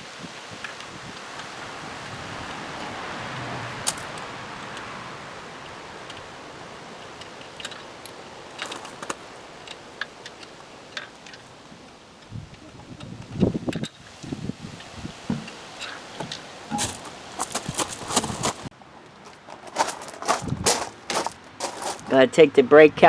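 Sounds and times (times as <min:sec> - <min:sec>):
wind noise on microphone: 0:00.0 - 0:05.9, 0:12.2 - 0:15.6, 0:16.2 - 0:18.7, 0:19.8 - 0:22.1.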